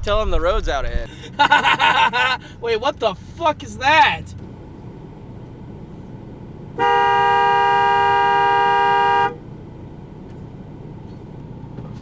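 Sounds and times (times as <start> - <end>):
low vehicle rumble: 0.0 - 12.0
car horn blast: 6.8 - 9.4.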